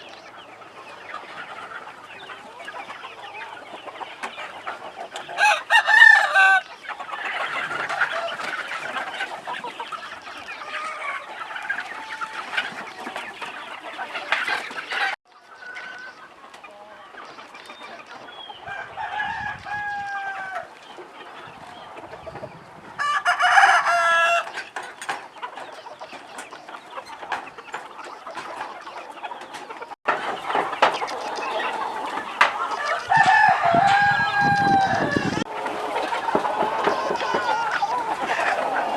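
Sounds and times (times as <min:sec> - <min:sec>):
chickens clucking: 0:00.0 - 0:38.9
rooster crowing: 0:05.4 - 0:06.7, 0:18.6 - 0:20.7, 0:23.0 - 0:24.5, 0:32.5 - 0:38.9.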